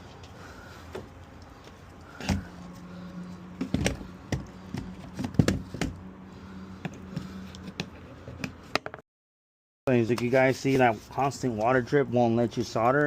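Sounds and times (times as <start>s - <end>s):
steady low hum: 0.0s - 8.8s.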